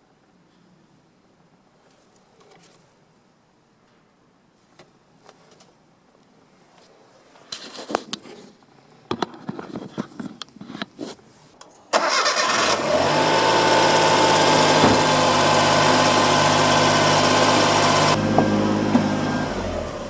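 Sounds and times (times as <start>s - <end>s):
car engine starting and idling: 11.9s - 20.0s.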